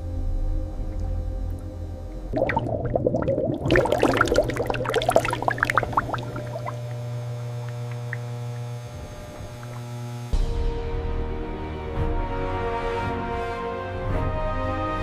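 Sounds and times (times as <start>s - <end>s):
liquid pouring and splashing: 2.3s - 10.0s
background music: 10.3s - 15.0s.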